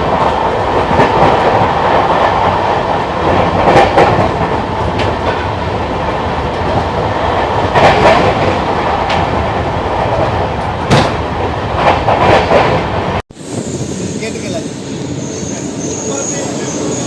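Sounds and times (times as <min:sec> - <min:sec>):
train wheels clattering on rails: 0:00.0 - 0:13.2.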